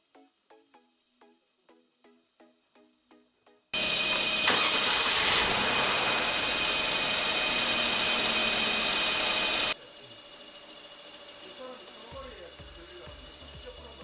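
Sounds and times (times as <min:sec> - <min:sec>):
loud machine noise with hiss: 0:03.8 - 0:14.0.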